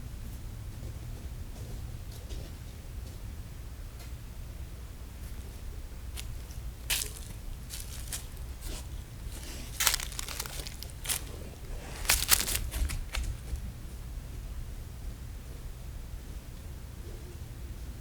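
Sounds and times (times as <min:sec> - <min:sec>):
bonfire crackling: 0:06.2 - 0:13.6.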